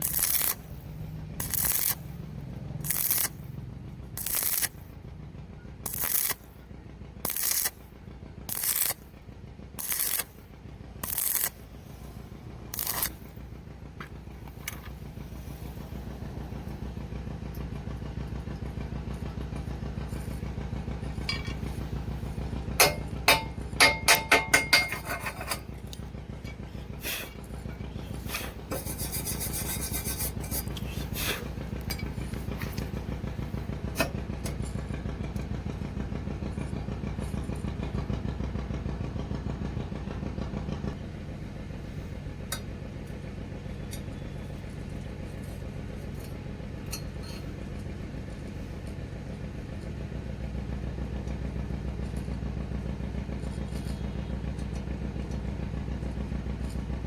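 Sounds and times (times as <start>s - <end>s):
welding arc crackling: 0.0s - 2.2s, 2.8s - 3.4s, 4.2s - 4.9s, 5.8s - 6.6s, 7.2s - 7.9s, 8.5s - 9.1s, 9.8s - 11.7s, 12.7s - 13.4s
sharp knocks on metal: 22.8s - 25.2s.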